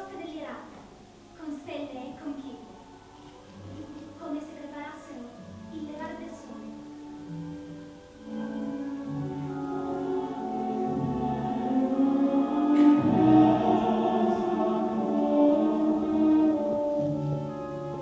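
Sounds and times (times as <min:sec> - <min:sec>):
slow music of held chords: 0:02.1 - 0:18.0.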